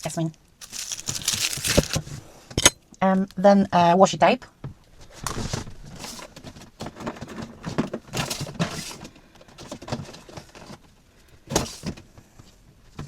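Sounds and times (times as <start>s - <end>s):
rustling of items handled: 0.0s - 2.3s, 5.0s - 13.0s
small items clicking and knocking: 0.6s - 2.0s.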